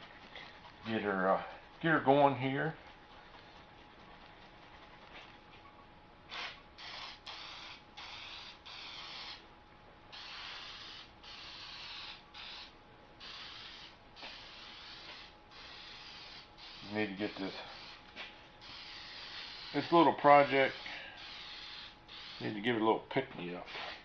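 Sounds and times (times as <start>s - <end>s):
aerosol can spraying: 6.3s - 9.4s, 10.1s - 22.6s.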